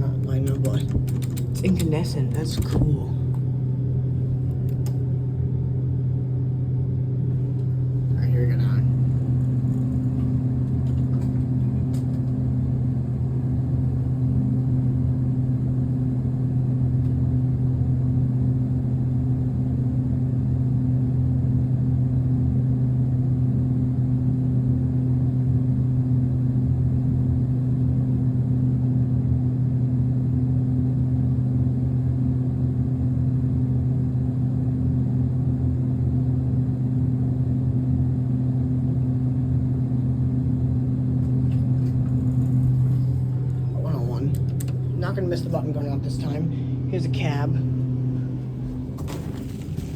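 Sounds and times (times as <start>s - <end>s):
elevator low hum: 0.0s - 49.9s.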